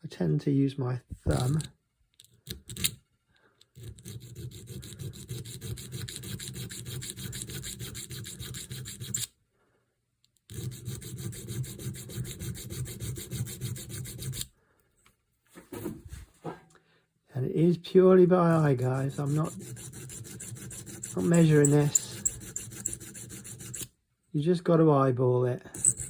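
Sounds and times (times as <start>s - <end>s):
file scraping metal screw: 3.6s - 9.3s, 10.4s - 14.5s, 18.5s - 23.9s, 25.7s - 26.0s.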